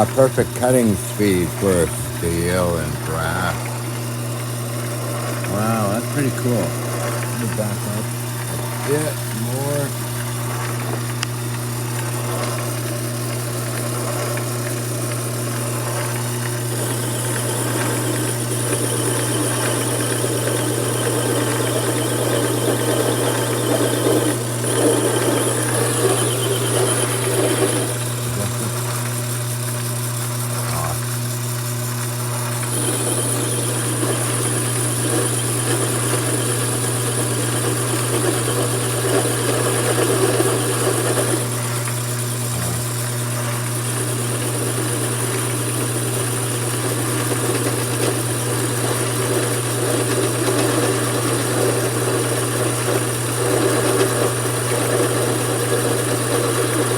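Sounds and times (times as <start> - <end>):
thin high whine: 0.0 - 10.8, 15.8 - 29.8, 32.3 - 48.2
lathe motor humming: 0.0 - 56.9.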